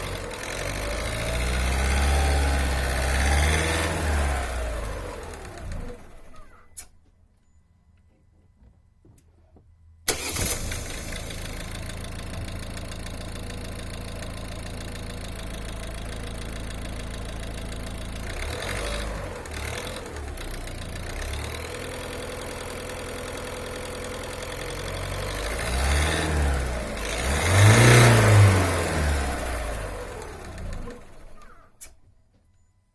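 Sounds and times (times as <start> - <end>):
diesel engine idling and revving: 0.0 - 6.6, 10.1 - 31.9.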